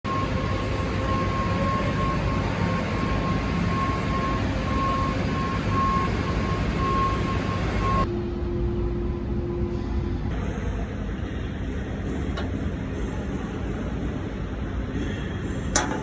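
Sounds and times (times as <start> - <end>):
loud machinery rumble: 0.0 - 16.0
pulsing thin whine: 0.1 - 10.2.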